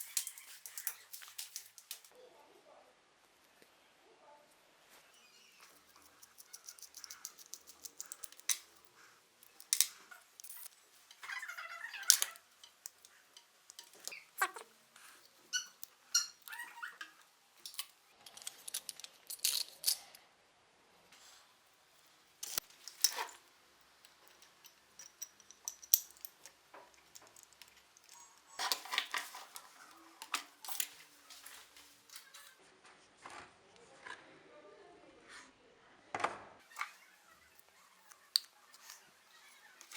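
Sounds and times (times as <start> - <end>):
small metal parts clinking: 0.0 - 2.1, 5.6 - 20.2, 22.4 - 32.5.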